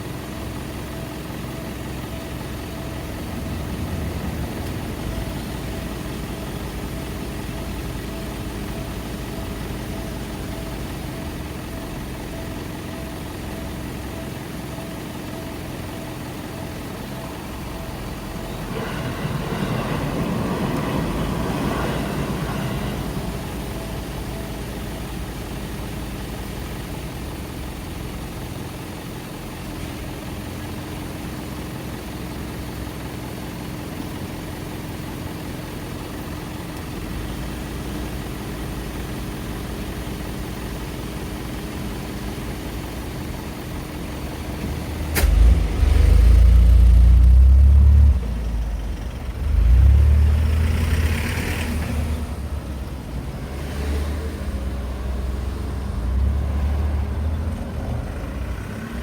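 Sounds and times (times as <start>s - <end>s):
road traffic hum: 0.0s - 59.0s
loud deep rumbles: 2.6s - 8.0s.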